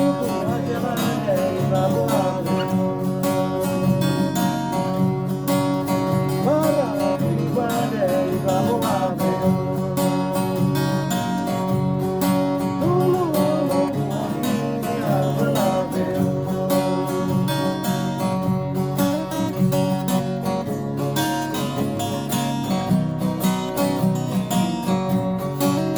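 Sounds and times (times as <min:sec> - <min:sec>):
person singing: 0:00.0 - 0:05.0, 0:06.4 - 0:17.8
acoustic guitars strummed: 0:00.0 - 0:25.9.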